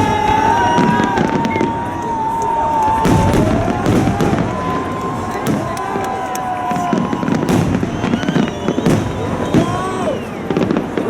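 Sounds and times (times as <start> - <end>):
fireworks bangs and crackles: 0.0 - 11.0
fireworks low booms: 0.0 - 11.0
long wavering whistle: 6.9 - 10.6.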